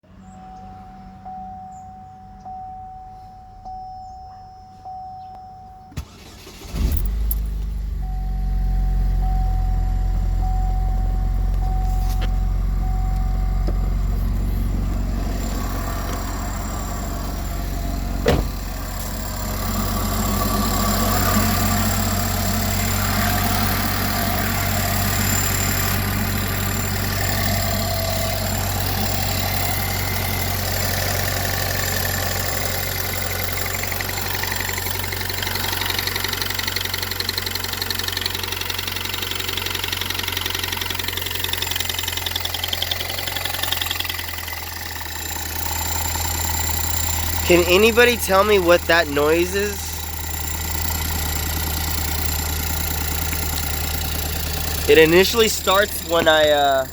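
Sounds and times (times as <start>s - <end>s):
car engine idling: 0.0s - 56.9s
warning chime beeping: 0.4s - 6.0s, 8.0s - 18.2s, 47.4s - 50.2s, 54.8s - 56.9s
starter cranking: 13.0s - 56.9s.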